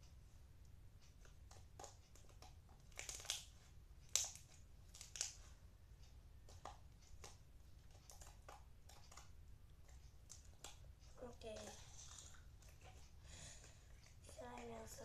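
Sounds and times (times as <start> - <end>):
slime squishing and crackling: 1.5 - 5.5, 6.5 - 13.0.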